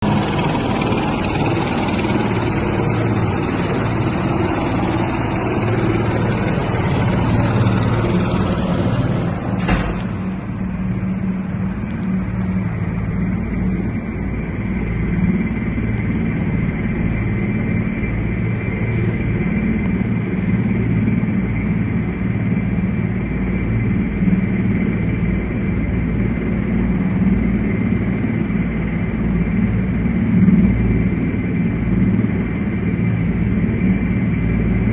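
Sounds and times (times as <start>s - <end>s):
helicopter engine and rotor drone: 0.0s - 34.9s
high whine: 0.0s - 34.9s
sharp knock: 9.6s - 10.3s.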